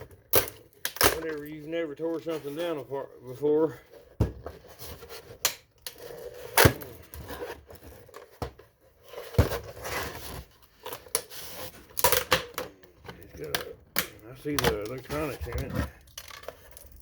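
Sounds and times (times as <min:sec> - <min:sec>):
plastic snapping and cracking: 0:00.2 - 0:01.4, 0:05.4 - 0:06.0, 0:10.9 - 0:17.0
screwdriver scraping plastic case: 0:09.0 - 0:17.0.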